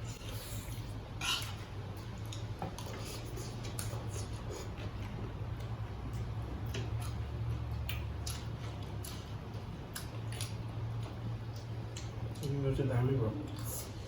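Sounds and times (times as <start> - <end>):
steady low hum: 0.0 - 14.0
wet mouth clicks and chewing: 2.1 - 12.6.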